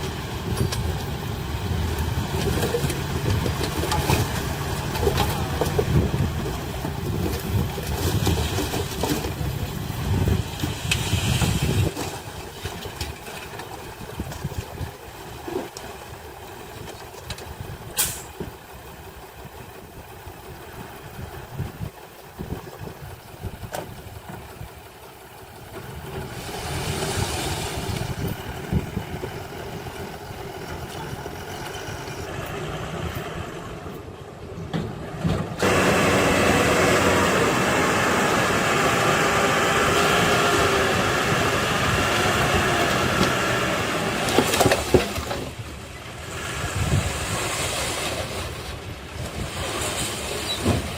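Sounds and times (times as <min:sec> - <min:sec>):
diesel earthmoving machinery revving: 0:00.0 - 0:12.5, 0:25.7 - 0:34.1, 0:35.0 - 0:50.9.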